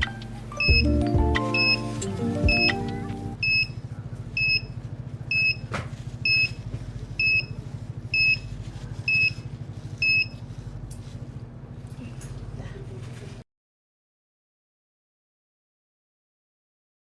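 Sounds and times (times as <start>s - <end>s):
steady low hum: 0.0s - 13.4s
alarm buzzer short high beeps: 0.6s - 0.9s.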